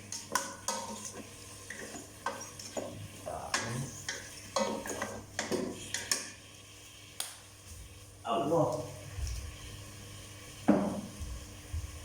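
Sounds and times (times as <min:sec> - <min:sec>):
faint sizzle: 0:00.0 - 0:12.0
utensil scraping a pan: 0:00.1 - 0:06.2.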